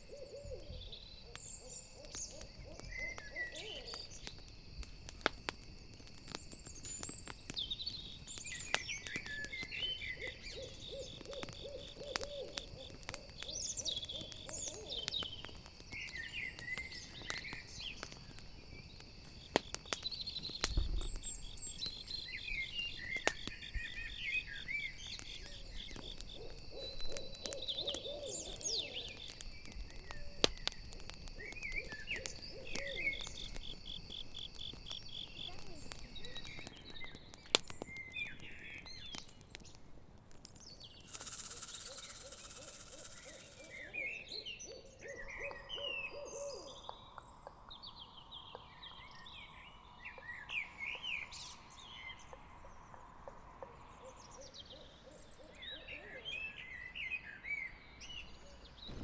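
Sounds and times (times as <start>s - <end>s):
owl hooting: 0.0s - 4.1s, 10.1s - 15.2s, 25.5s - 29.2s, 31.4s - 33.3s, 41.1s - 47.0s
campfire crackling: 0.0s - 55.9s, 56.6s - 59.0s
crickets trilling: 0.0s - 59.0s
high chirping calls: 41.0s - 59.0s.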